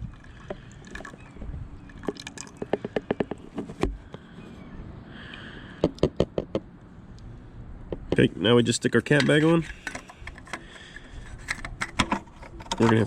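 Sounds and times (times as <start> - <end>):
liquid glugging and dripping: 0.0 - 3.0.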